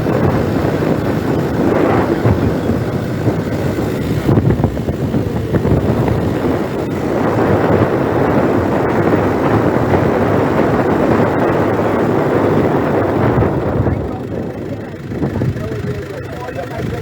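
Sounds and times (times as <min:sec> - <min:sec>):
car road noise: 0:00.0 - 0:17.0
wind buffeting microphone: 0:00.0 - 0:17.0.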